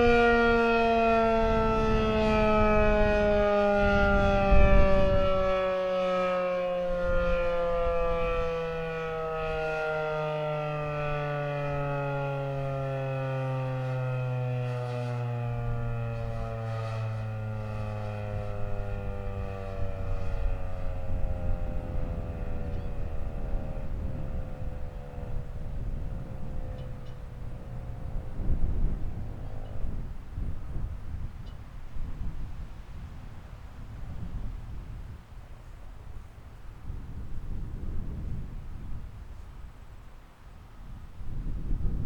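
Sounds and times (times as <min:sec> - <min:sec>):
rotating siren winding down: 0:00.0 - 0:30.8.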